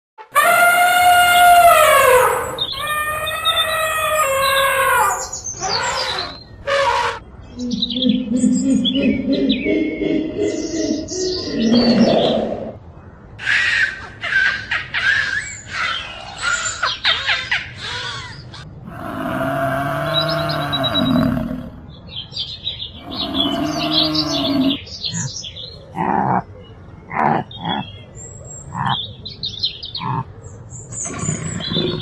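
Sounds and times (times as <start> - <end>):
short animal calls: 0.3 - 7.2, 23.0 - 25.3
bird chirps: 0.4 - 12.7, 19.5 - 32.0
long low animal calls: 0.4 - 12.8, 18.8 - 22.0, 23.0 - 28.0.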